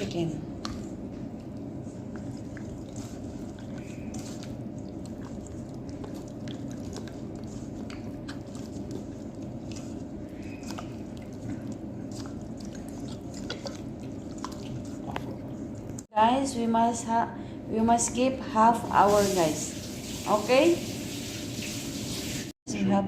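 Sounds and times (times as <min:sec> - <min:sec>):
hands mixing wet chicken: 0:00.0 - 0:16.2
low room hum: 0:00.0 - 0:23.0.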